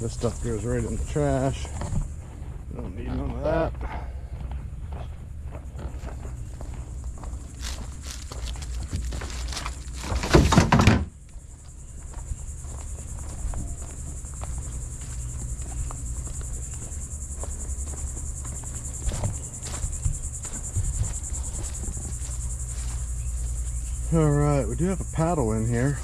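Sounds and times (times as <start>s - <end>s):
high insect trill: 0.0s - 26.0s
soft knocks and thunks: 7.6s - 11.2s
loud clatter and knocking: 8.5s - 11.1s.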